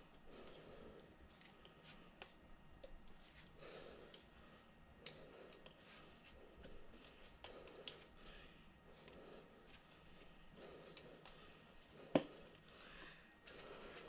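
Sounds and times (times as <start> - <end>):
soft rustling: 0.3 - 3.6.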